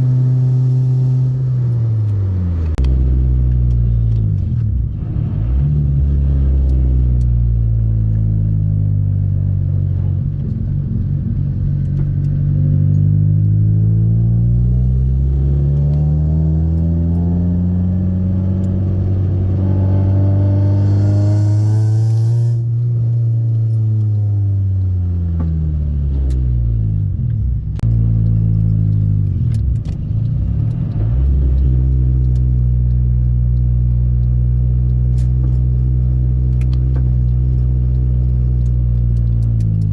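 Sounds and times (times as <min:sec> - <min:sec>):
car engine accelerating: 0:00.0 - 0:39.9
engine hiss: 0:20.6 - 0:22.7.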